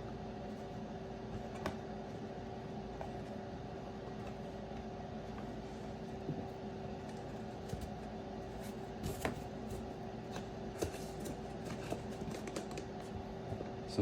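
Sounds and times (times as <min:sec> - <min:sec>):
steady electrical hum: 0:00.0 - 0:14.0
cardboard boxes knocking and clicking: 0:08.6 - 0:13.2.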